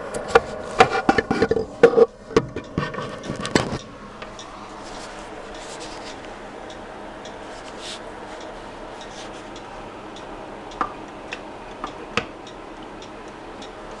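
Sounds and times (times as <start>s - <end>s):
faint hum: 0.0s - 14.0s
wall clock ticking: 5.5s - 14.0s.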